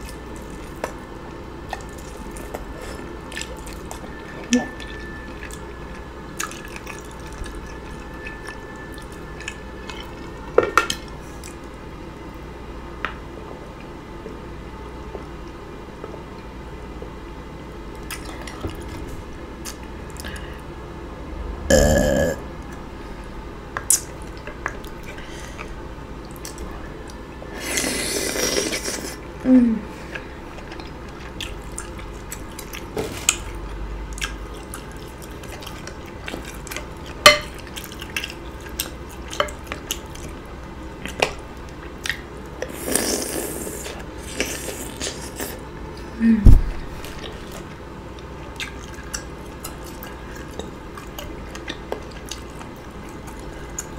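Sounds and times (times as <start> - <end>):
wet chewing and lip-smacking: 1.6 - 4.1, 6.3 - 11.7, 17.9 - 19.0, 30.1 - 45.6, 47.0 - 53.9.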